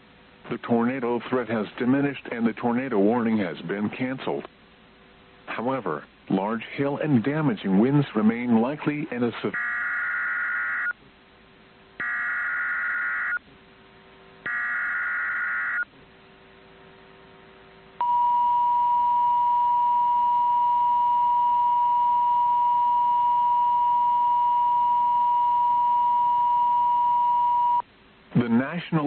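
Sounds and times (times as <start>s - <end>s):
steady warning alarm tone: 9.6s - 11.0s, 12.0s - 13.4s, 14.5s - 15.9s
raspy digital squawks: 12.0s - 13.4s, 14.5s - 15.8s.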